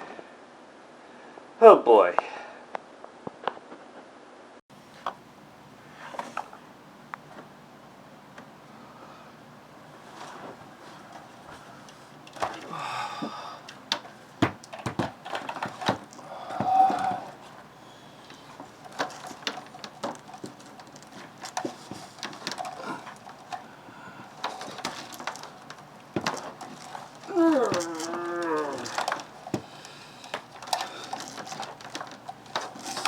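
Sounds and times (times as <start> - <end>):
cables and plugs rattling: 9.9 - 33.0
man groaning: 16.2 - 17.4, 27.3 - 29.1.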